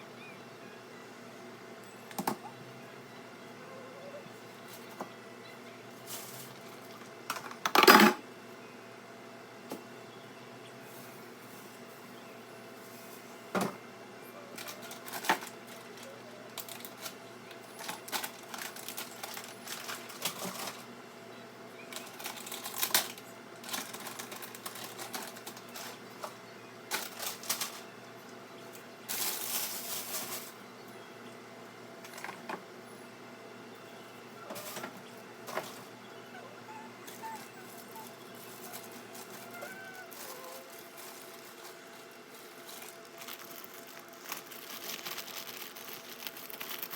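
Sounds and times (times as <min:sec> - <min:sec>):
plastic packaging rustle: 0:05.9 - 0:07.6, 0:14.5 - 0:20.9, 0:21.9 - 0:27.9, 0:28.7 - 0:30.6, 0:37.0 - 0:46.9.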